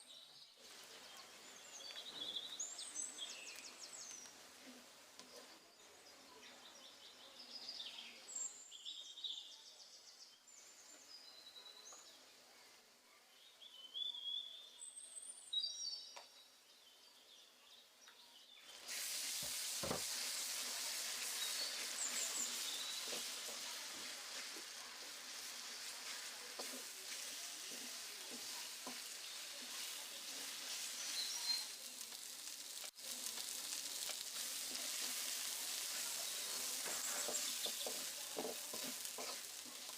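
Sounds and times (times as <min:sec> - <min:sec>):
birds chirping faintly: 0:00.0 - 0:18.9, 0:20.6 - 0:39.9
food sizzling in hot oil: 0:18.6 - 0:39.9.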